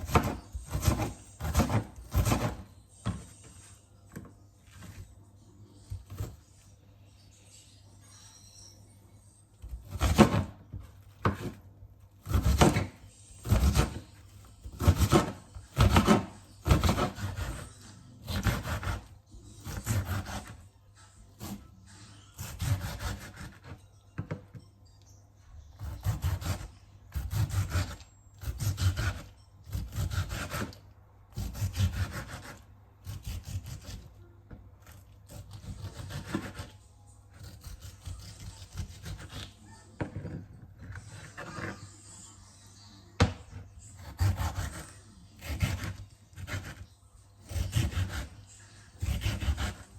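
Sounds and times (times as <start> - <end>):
vegetable rasping on hand grater: 0.0 - 3.3, 12.2 - 14.1, 14.7 - 20.6, 22.4 - 23.7, 25.8 - 34.1, 34.8 - 36.7, 37.3 - 41.9, 44.0 - 46.8, 47.4 - 49.9.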